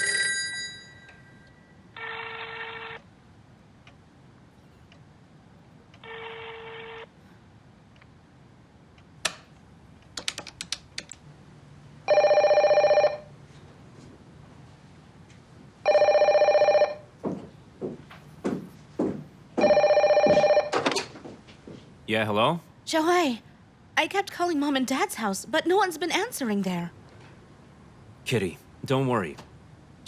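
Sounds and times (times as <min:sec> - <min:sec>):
telephone ringing: 0:00.0 - 0:03.1, 0:06.0 - 0:07.1, 0:12.0 - 0:13.3, 0:15.8 - 0:17.1, 0:19.6 - 0:20.8
knocks: 0:17.2 - 0:21.4.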